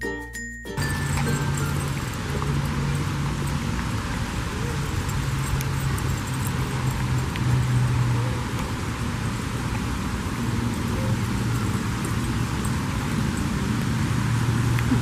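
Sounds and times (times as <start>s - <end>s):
car engine running: 0.8s - 15.0s
steady rain: 1.1s - 15.0s.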